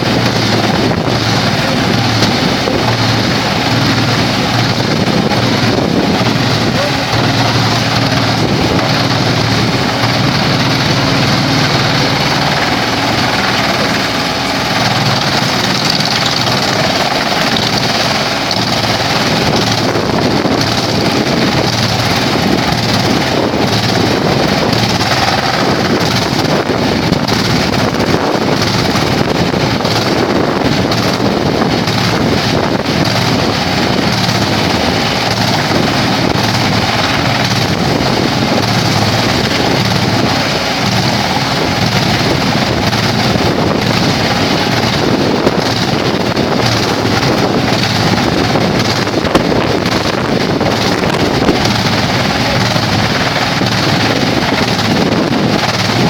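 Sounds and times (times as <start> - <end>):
wood chipper running: 0.0 - 56.0.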